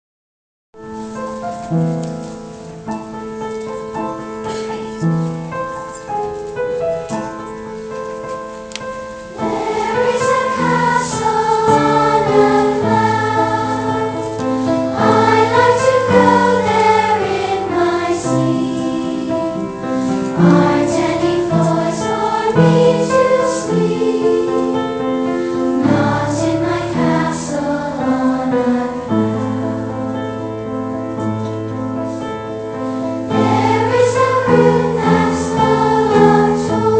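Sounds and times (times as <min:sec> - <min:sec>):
piano accompaniment: 0:00.8 - 0:36.9
choir singing: 0:09.3 - 0:30.0, 0:33.2 - 0:36.9.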